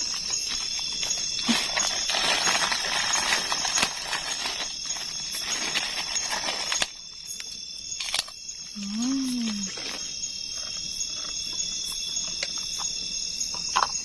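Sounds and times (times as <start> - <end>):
crackers crunching: 0.0 - 8.4
night insects chorus: 0.0 - 14.0.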